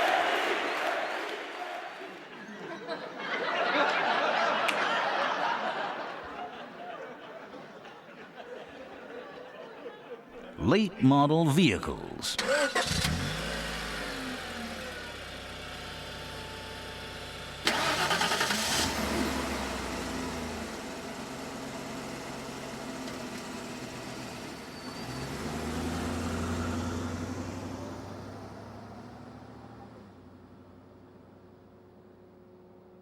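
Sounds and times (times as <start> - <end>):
car engines running and idling: 12.3 - 33.0.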